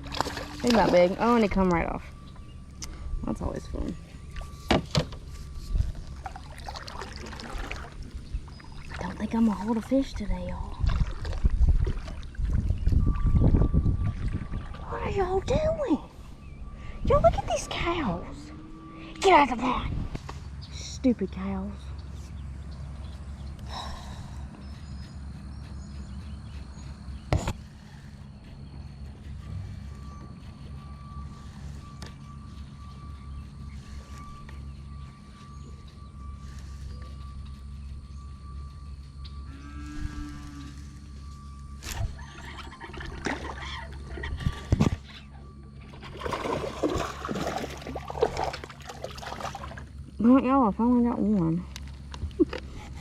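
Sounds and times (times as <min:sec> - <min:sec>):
fish thrashing in water: 0:00.0 - 0:01.4, 0:05.9 - 0:09.9, 0:10.7 - 0:15.0, 0:41.8 - 0:45.0, 0:45.8 - 0:50.0
water splashing and trickling: 0:00.0 - 0:02.0, 0:05.6 - 0:16.0, 0:41.9 - 0:45.0, 0:45.8 - 0:50.1
low outdoor rumble: 0:00.0 - 0:53.0
faint bird chirps: 0:12.7 - 0:45.8.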